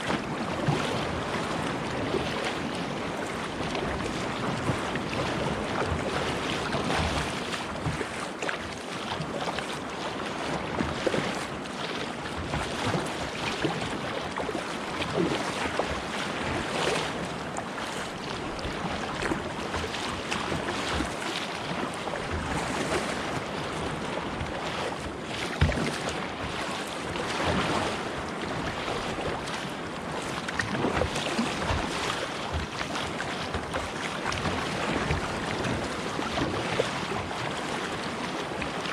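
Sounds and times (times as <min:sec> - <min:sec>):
sea water splashing around kayak: 0:00.0 - 0:38.9.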